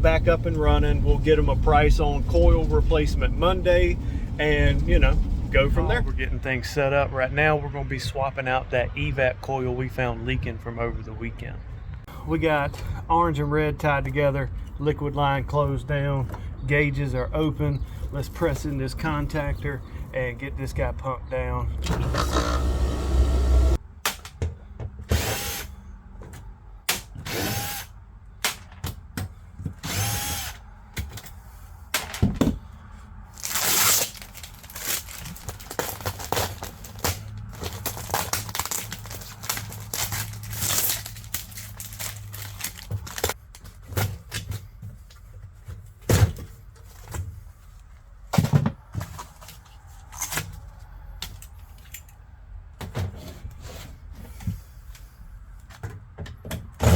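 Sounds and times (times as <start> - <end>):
low hum: 0.0 - 6.5, 21.8 - 23.8
power drill bursts: 21.8 - 23.8, 25.1 - 25.7, 27.2 - 27.9, 29.8 - 30.6.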